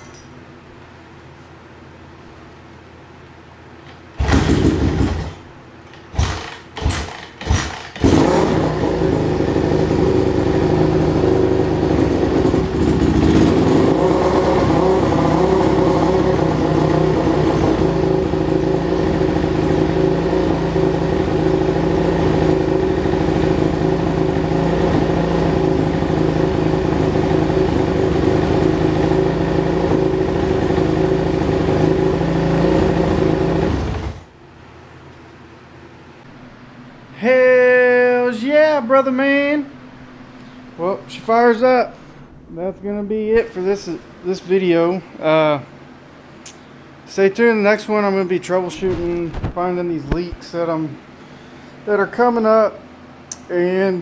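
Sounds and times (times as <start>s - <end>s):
motorcycle engine starting and running: 3.8s - 34.4s.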